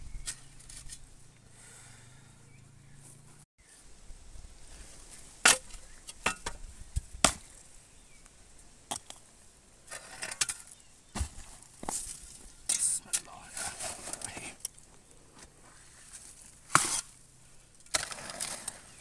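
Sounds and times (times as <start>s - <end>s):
scraping rustle: 0.0s - 1.2s, 9.8s - 17.2s.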